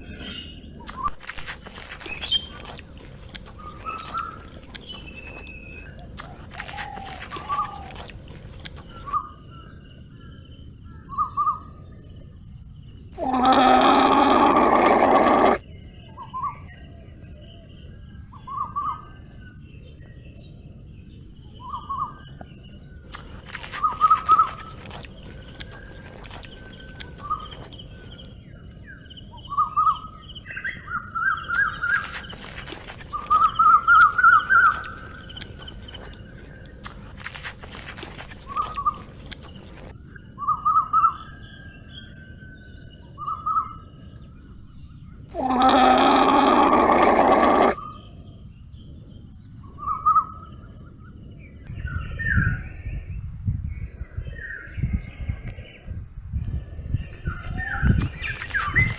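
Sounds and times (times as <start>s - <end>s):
rattling animal calls: 13.2s - 15.6s, 45.3s - 47.9s.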